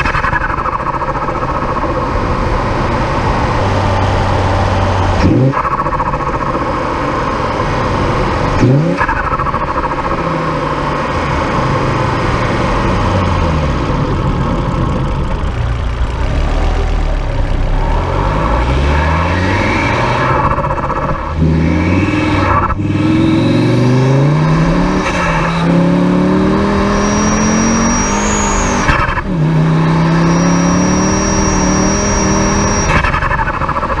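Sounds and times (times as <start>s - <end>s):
turbocharged car engine accelerating: 0.0s - 34.0s
high turbo whistle: 24.6s - 29.2s, 29.8s - 33.2s.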